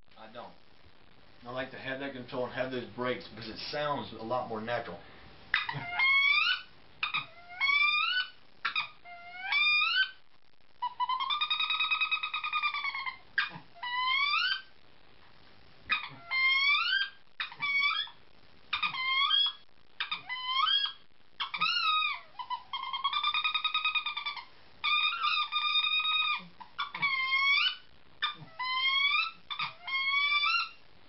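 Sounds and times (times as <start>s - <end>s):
duck call squealing whistles: 10.8s - 14.7s, 15.9s - 18.2s, 18.8s - 30.8s.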